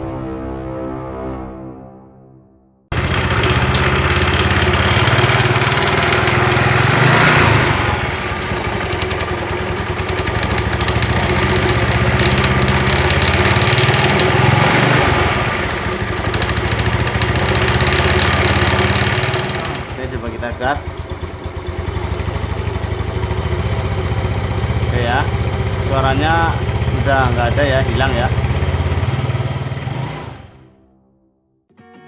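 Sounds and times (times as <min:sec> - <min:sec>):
scooter engine revving: 0:02.9 - 0:30.7.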